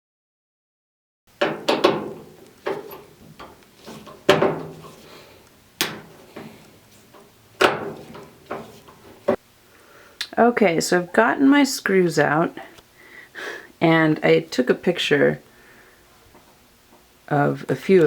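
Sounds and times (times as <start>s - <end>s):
metal tools knocking and clicking: 1.4s - 5.2s, 5.8s - 9.3s.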